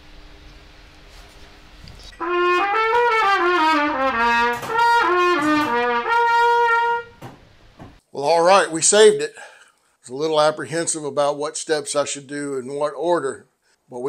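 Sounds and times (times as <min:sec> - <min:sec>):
trumpet playing a run of notes: 0:02.2 - 0:07.2.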